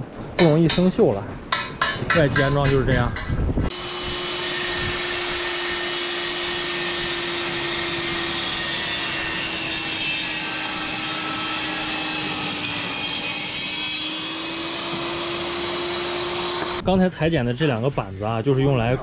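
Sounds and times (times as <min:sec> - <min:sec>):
power saw cutting wood: 0:03.7 - 0:16.8.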